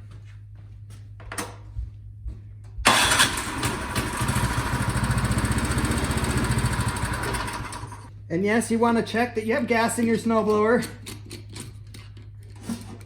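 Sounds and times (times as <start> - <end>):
electric starter cranking: 2.9 - 8.1
snowblower engine running: 2.9 - 8.1.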